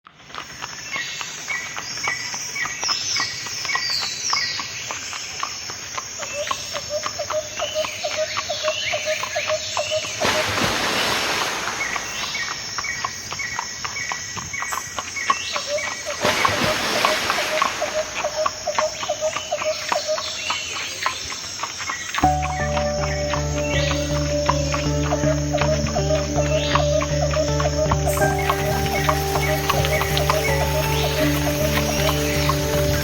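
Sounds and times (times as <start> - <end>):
brief noisy rush: 10.2 - 12.7.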